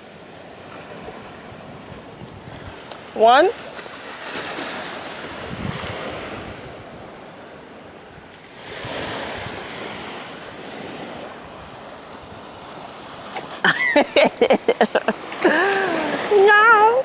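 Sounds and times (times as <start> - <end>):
surf washing onto shore: 0.0 - 17.0
wind buffeting microphone: 0.7 - 13.4.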